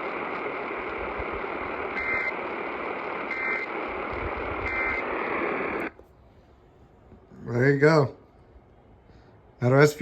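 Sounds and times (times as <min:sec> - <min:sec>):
static hiss: 0:00.0 - 0:06.0.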